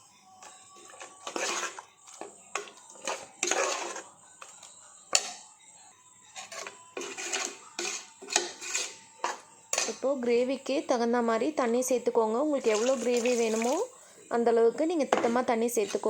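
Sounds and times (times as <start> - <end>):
spoon scraping pot: 0.4 - 5.6, 6.2 - 10.2, 12.6 - 13.9, 15.1 - 16.0.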